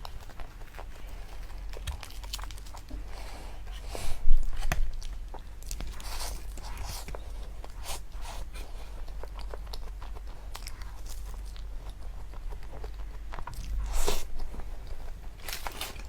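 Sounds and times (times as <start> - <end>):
person chewing crunchy food: 0.0 - 16.0.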